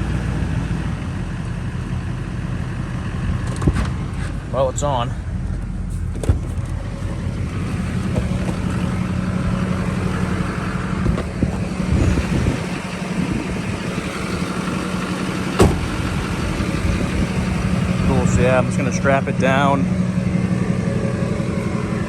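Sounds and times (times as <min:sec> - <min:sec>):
diesel engine idling: 0:00.3 - 0:22.0.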